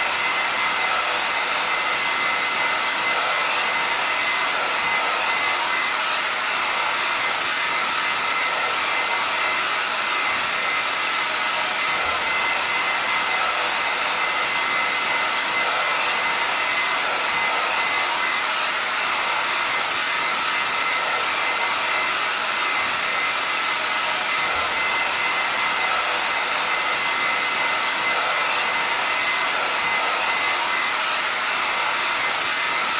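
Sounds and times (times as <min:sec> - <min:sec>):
hair dryer blowing: 0:00.0 - 0:32.9.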